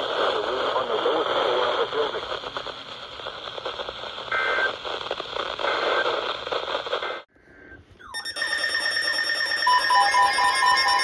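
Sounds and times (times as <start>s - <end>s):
radio static hiss: 0.0s - 7.9s
electronic alert tones: 8.0s - 11.0s
two-note alternating beep: 8.0s - 11.0s.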